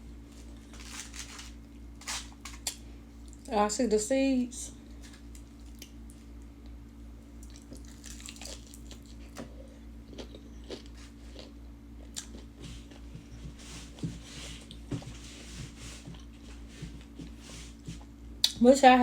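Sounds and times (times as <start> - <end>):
chewing and biting food: 7.4 - 13.1.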